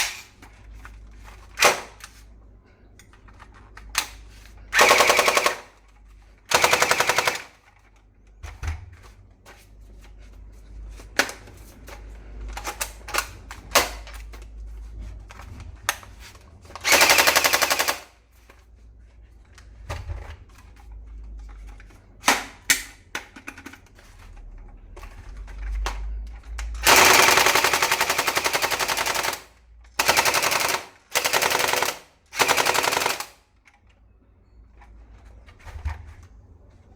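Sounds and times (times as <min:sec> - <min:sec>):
toy rifle automatic fire: 0:04.8 - 0:05.7, 0:06.5 - 0:07.6, 0:16.8 - 0:18.1, 0:26.8 - 0:33.4.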